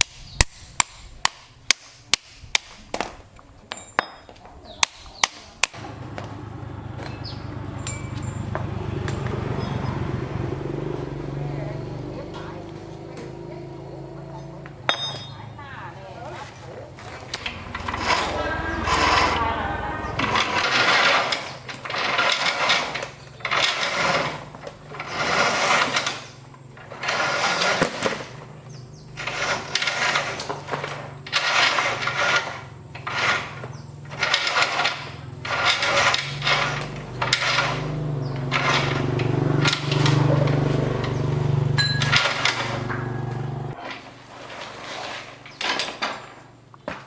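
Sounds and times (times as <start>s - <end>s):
low motor hum: 5.7s - 14.9s, 17.1s - 44.8s
tool grinding metal: 17.2s - 46.4s.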